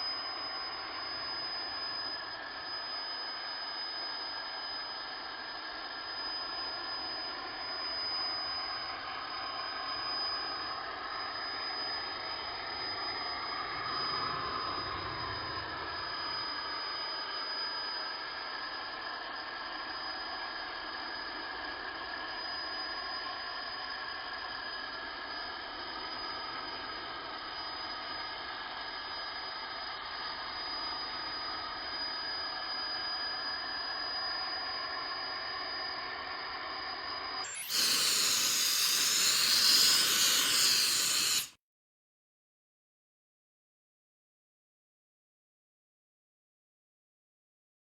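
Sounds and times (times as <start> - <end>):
cnc router machine whining: 37.4 - 41.5.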